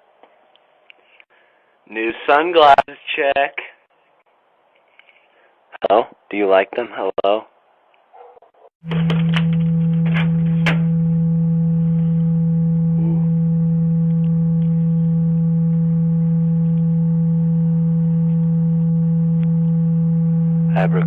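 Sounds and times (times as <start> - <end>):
low electronic tone: 8.8 - 21.0.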